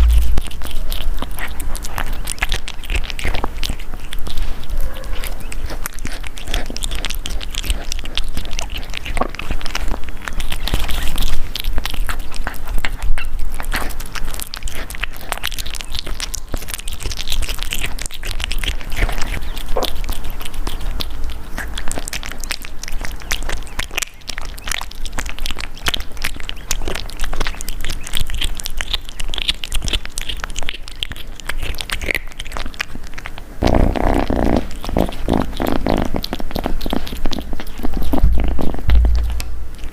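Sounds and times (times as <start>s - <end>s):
kitten chewing and mouth clicks: 0.0s - 39.9s
kitten purring: 0.0s - 39.9s.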